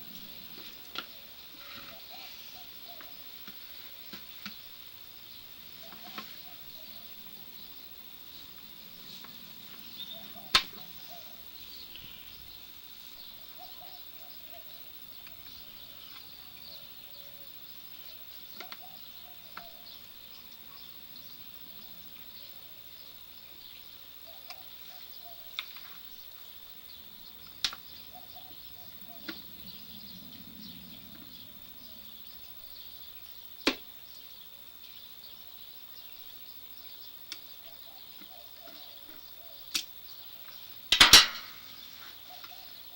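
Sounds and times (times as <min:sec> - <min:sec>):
sharp clicks: 0:10.5 - 0:10.9.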